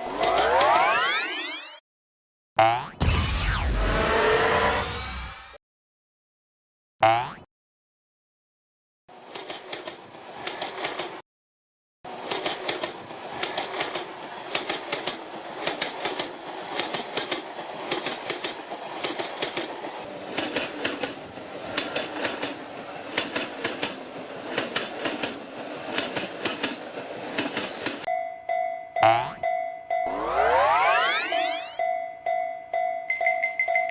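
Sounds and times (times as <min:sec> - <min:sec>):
train wheels clicking over rail joints: 0:09.2 - 0:11.2, 0:12.1 - 0:28.1
train rumble: 0:12.1 - 0:28.1
short steady chime tone: 0:31.4 - 0:33.9.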